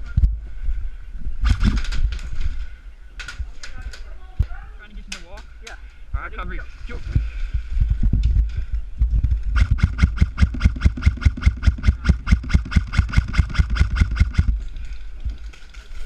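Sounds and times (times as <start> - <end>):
airsoft rifle rapid fire: 9.6 - 14.5.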